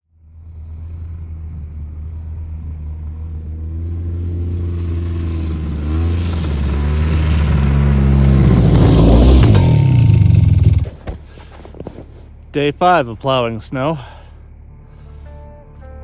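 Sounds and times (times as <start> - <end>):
vehicle engine revving up: 0.4 - 11.0.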